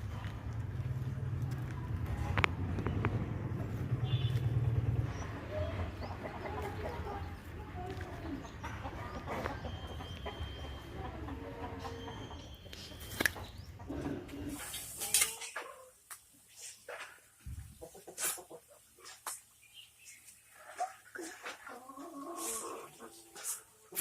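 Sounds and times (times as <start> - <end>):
chickens clucking: 4.8 - 24.0.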